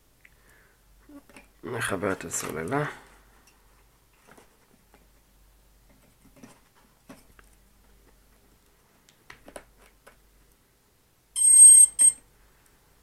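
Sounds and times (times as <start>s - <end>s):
high electronic beep: 11.4s - 12.2s.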